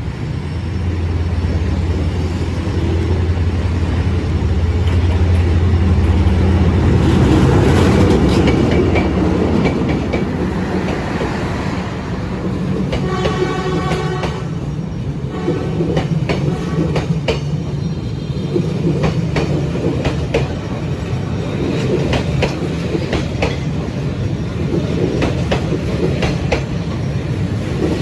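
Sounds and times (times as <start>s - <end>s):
locomotive engine drone: 0.0s - 15.9s
train rolling noise: 0.0s - 28.0s.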